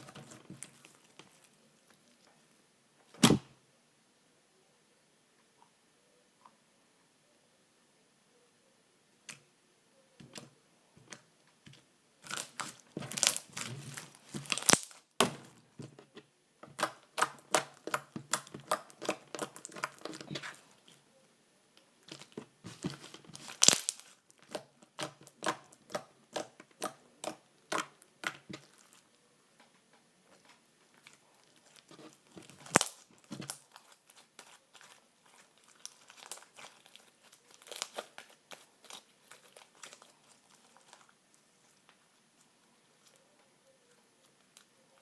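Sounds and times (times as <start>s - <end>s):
slime squelching and popping: 12.2s - 15.8s, 16.6s - 21.0s, 22.0s - 29.1s, 30.3s - 41.2s.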